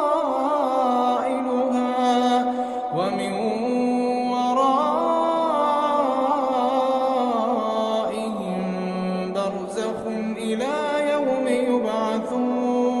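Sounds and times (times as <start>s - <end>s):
man chanting melodically: 0.0s - 13.0s.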